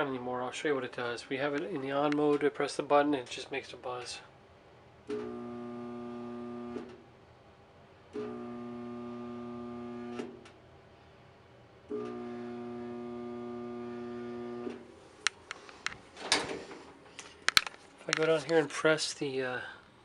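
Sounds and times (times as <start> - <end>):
clothes dryer electrical buzz: 5.1 - 7.1, 8.1 - 10.6, 11.9 - 15.0.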